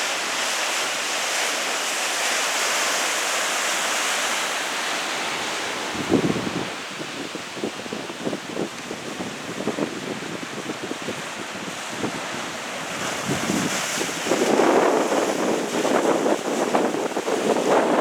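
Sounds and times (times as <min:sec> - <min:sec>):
waves rushing: 0:00.0 - 0:18.0
wind buffeting microphone: 0:05.3 - 0:18.0.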